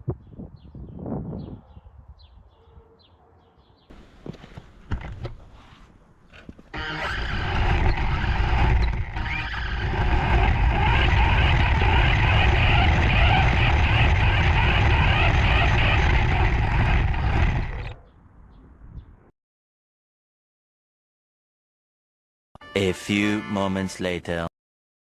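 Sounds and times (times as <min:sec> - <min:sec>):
remote-control car motor rumble: 0:06.7 - 0:18.0.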